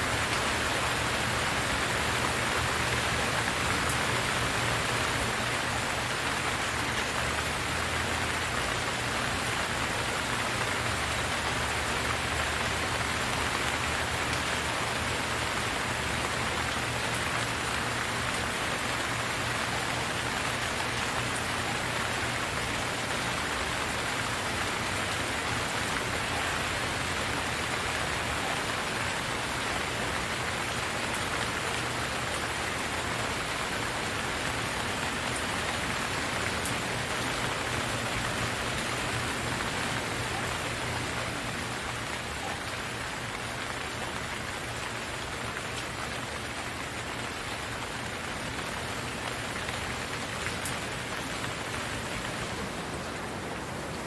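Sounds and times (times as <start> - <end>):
steady rain pattering: 0.0 - 54.0.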